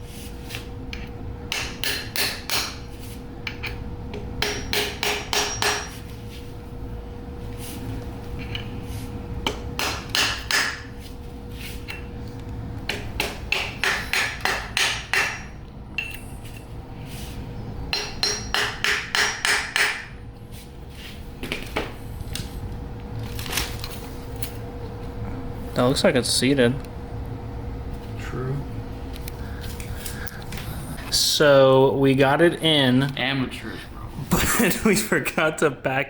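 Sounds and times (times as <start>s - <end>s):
faint steady hum: 0.0s - 36.0s
hammer striking metal: 1.5s - 2.8s, 4.4s - 6.0s, 9.5s - 10.9s, 12.9s - 16.2s, 17.9s - 20.2s.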